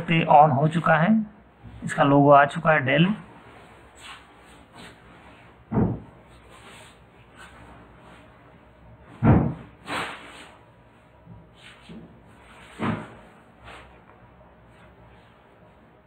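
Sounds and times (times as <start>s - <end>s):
objects knocking on hard surface: 5.7s - 6.1s.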